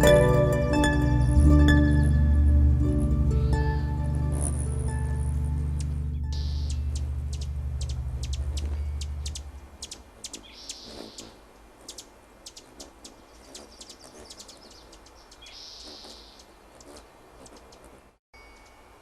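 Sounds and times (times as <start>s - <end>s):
low musical drone: 0.0s - 9.6s
sharp chirps and clicks: 4.4s - 18.0s
hissing high bird calls: 6.3s - 18.0s.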